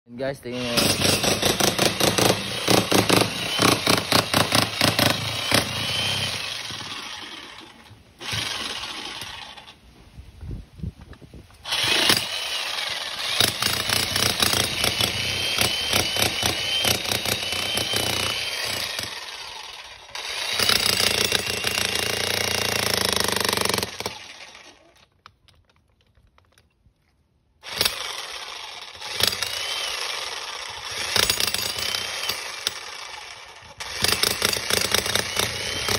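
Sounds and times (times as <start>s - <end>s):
jackhammer hammering: 0.5s - 9.8s, 11.7s - 24.8s, 27.6s - 35.9s.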